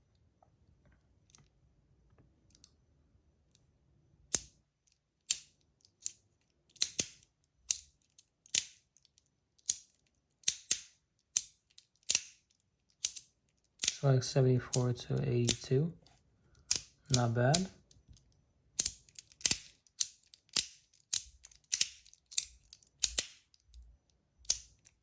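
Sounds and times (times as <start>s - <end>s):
metal fidget toy clicking: 5.3s - 7.9s, 9.6s - 14.0s, 15.4s - 15.6s, 16.7s - 17.7s, 18.8s - 23.7s.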